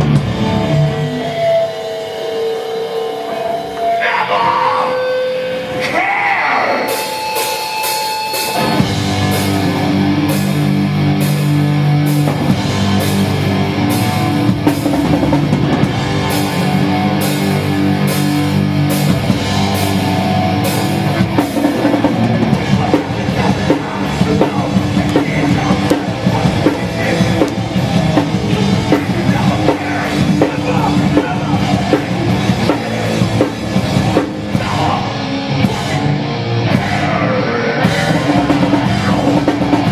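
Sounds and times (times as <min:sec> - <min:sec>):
punk band playing live: 0:00.0 - 0:39.9.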